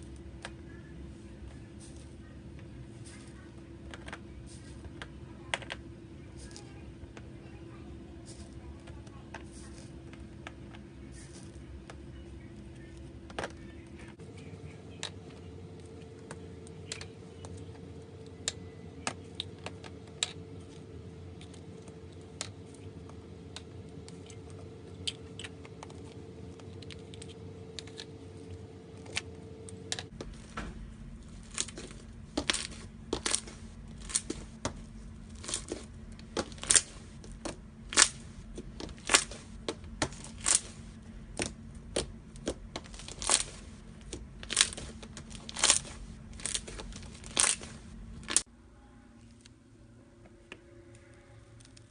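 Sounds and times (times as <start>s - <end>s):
slime crust crackling: 30.0s - 48.5s.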